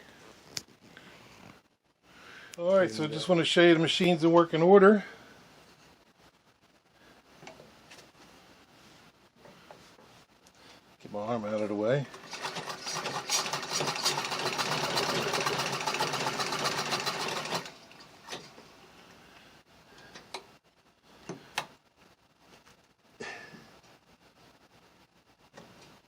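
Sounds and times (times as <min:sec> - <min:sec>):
sewing machine clattering: 0:12.0 - 0:18.6.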